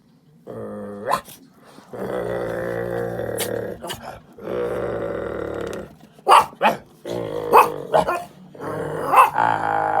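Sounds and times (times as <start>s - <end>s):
dog growling: 0.4s - 10.0s
dog barking: 6.3s - 6.8s, 7.5s - 8.3s, 9.0s - 9.5s.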